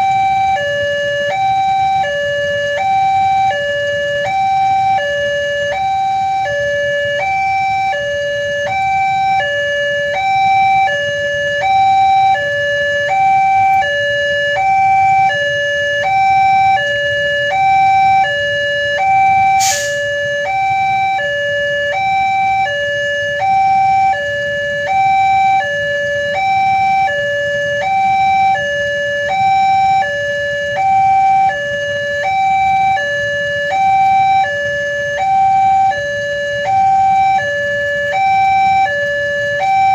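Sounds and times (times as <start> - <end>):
level-crossing two-tone alarm: 0.0 - 39.9.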